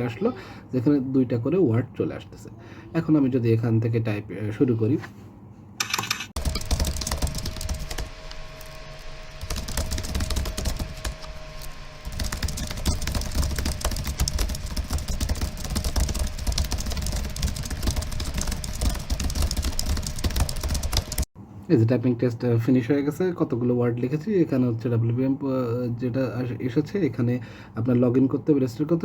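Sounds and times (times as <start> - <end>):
fast typing on a keyboard: 5.8 - 21.3.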